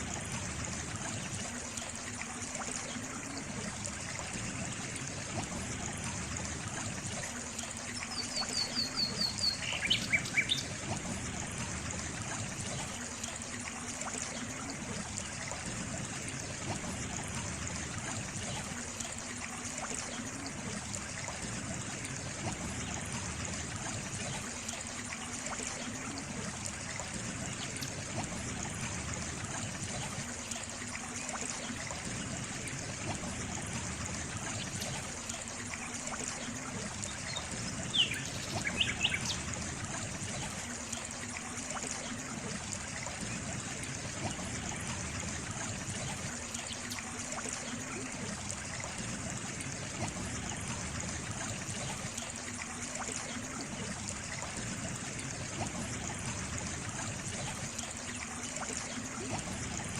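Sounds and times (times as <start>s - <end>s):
water trickling: 0.0s - 59.9s.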